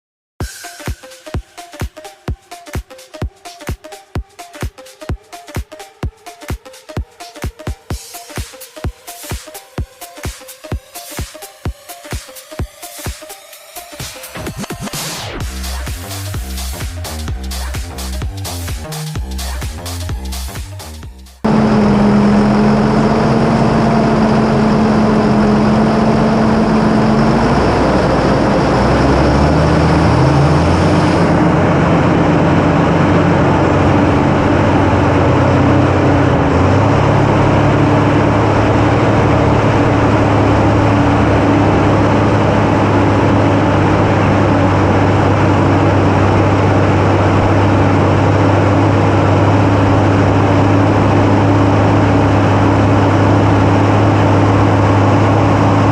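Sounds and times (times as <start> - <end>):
tractor diesel engine running: 15.4 - 55.9.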